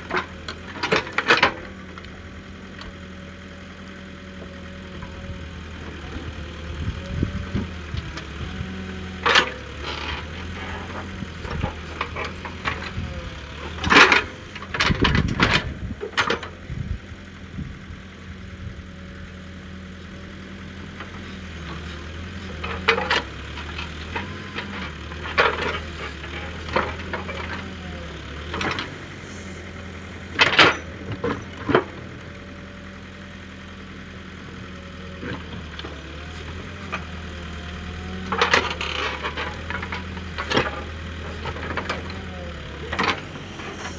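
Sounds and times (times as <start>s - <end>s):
diesel engine humming: 0.0s - 43.9s.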